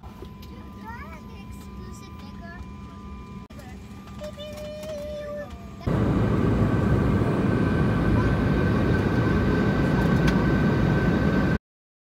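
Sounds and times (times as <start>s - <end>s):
thin steady whine: 0.0s - 11.6s
airliner cabin rumble: 5.8s - 11.6s.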